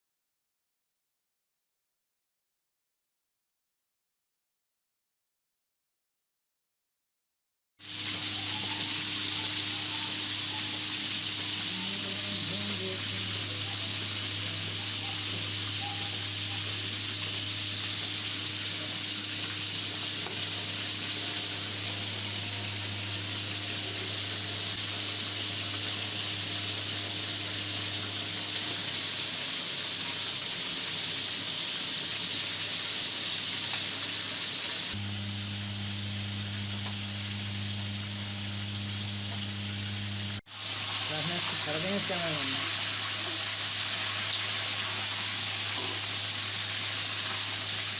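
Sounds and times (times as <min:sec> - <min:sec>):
steady hiss: 0:07.8 - 0:35.0, 0:40.5 - 0:47.9
low hum: 0:08.2 - 0:28.9, 0:35.0 - 0:40.4.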